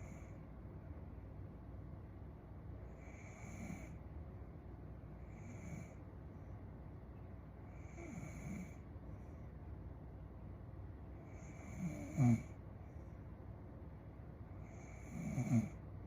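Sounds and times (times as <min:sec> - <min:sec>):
woman snoring faintly: 0:11.4 - 0:12.5, 0:15.1 - 0:15.8.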